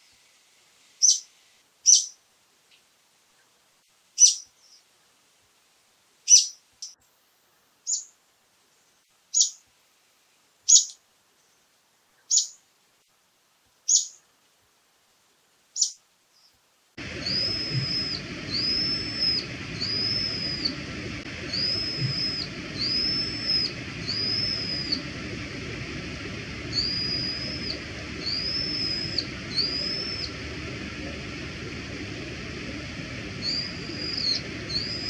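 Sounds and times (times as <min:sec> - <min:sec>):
bird call notes: 0:17.0 - 0:35.0.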